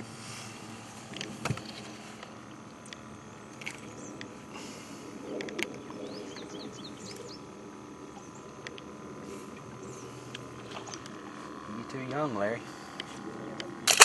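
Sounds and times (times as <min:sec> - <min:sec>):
steady low background hum: 0:00.0 - 0:14.0
bird chirping: 0:05.2 - 0:07.5.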